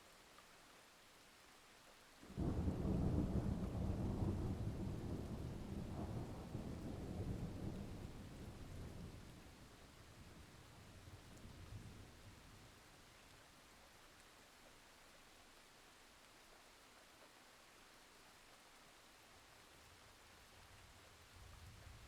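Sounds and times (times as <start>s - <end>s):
faint hiss: 0.0s - 22.0s
thunderclap rumbling: 2.4s - 9.3s.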